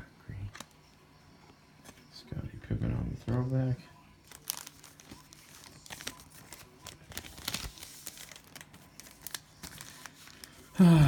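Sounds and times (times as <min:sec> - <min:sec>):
cellophane wrapper crinkling: 0:04.2 - 0:10.8.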